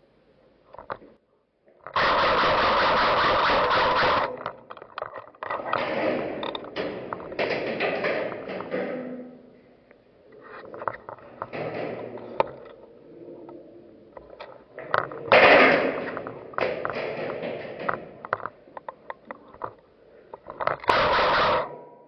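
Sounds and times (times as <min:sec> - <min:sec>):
airsoft guns firing: 0:01.9 - 0:04.4, 0:20.9 - 0:21.8.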